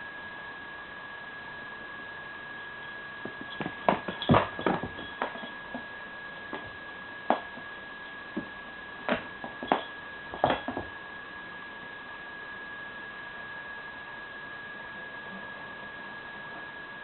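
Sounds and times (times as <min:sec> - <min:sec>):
high-pitched whine: 0:00.0 - 0:17.0.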